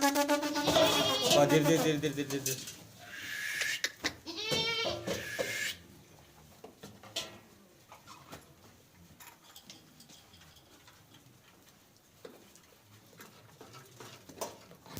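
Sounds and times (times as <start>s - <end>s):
goats' hooves tapping and clicking: 3.8s - 14.9s.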